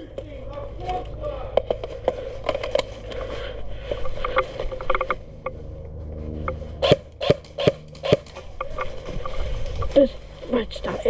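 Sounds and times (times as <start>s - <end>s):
steady low rumble: 0.0s - 11.0s.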